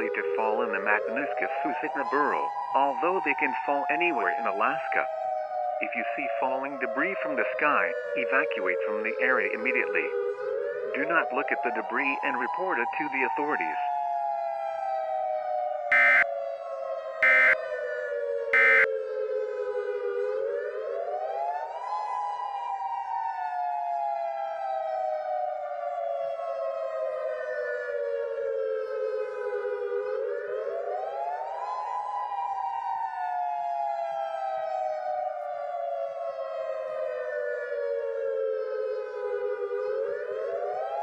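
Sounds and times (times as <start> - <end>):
warning siren wailing: 15.9 - 16.2, 17.2 - 17.6, 18.6 - 18.9.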